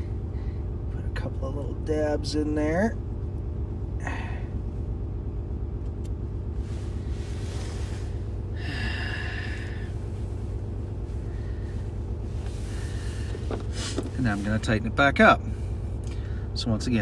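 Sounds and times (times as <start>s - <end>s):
pickup truck engine idling: 0.0s - 17.0s
person breathing out sharply: 6.9s - 10.0s.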